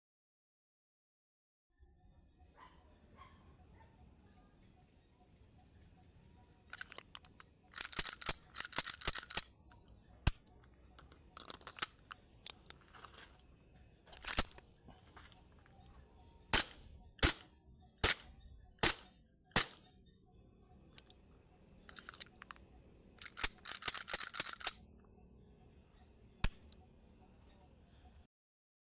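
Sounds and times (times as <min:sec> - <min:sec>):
pistol slide rattling clicks: 0:06.7 - 0:09.5, 0:10.3 - 0:13.4, 0:14.1 - 0:14.6, 0:16.6 - 0:19.9, 0:21.9 - 0:22.6, 0:23.2 - 0:24.8
airsoft pistol shots: 0:16.5 - 0:19.9.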